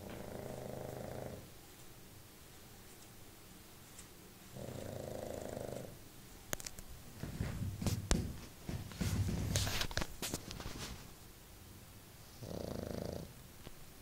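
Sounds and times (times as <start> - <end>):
dog snoring: 0.0 - 1.5, 4.5 - 6.0, 12.4 - 13.4.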